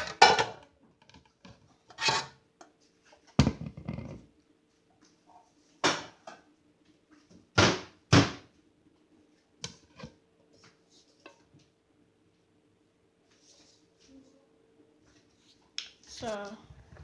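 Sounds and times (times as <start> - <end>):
kitchen knocks and clunks: 5.8 - 6.4, 7.6 - 8.5.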